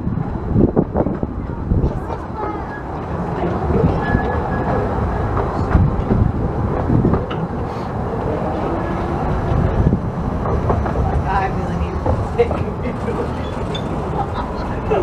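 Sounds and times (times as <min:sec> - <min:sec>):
wind buffeting microphone: 0:00.0 - 0:15.0
steam train running: 0:07.6 - 0:15.0
wheels clicking: 0:10.7 - 0:15.0.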